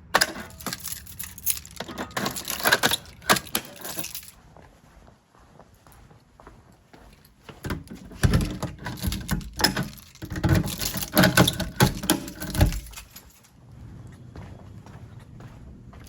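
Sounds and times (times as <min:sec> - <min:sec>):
metallic clicks and key rattles: 0:00.0 - 0:04.4, 0:07.1 - 0:13.5.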